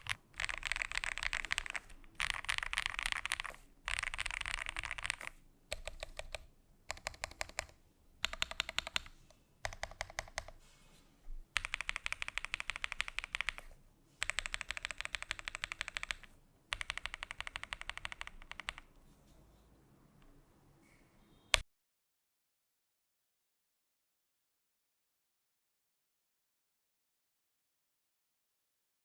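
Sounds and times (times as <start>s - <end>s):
mechanical keyboard typing: 0.0s - 10.6s, 11.6s - 18.9s.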